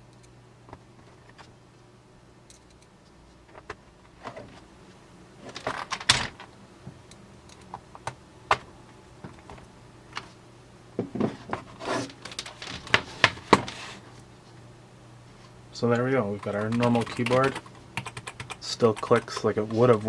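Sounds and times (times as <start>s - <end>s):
keyboard keys clicking: 16.4s - 20.0s.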